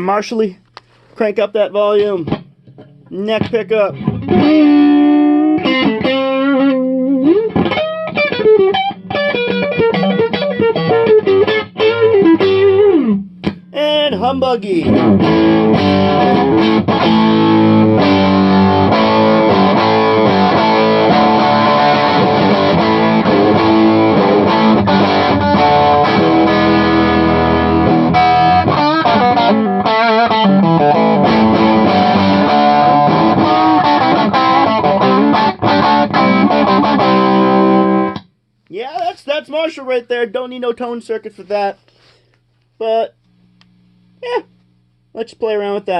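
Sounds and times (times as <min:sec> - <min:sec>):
distorted electric guitar: 0:01.9 - 0:38.4.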